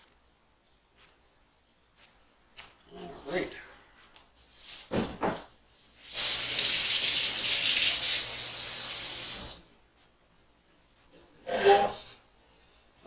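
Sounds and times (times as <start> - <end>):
kitchen tap running: 6.0 - 9.6.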